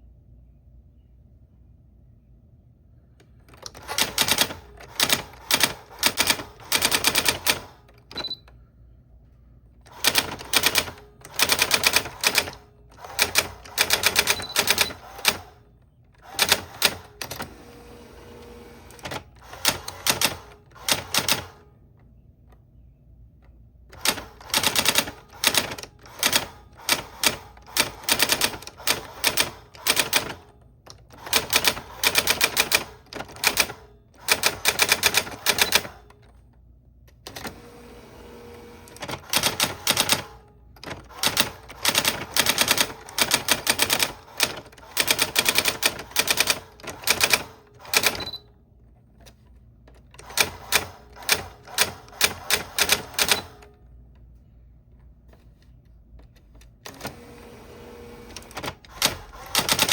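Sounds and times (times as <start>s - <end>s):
typewriter key strikes: 58.3s - 59.9s.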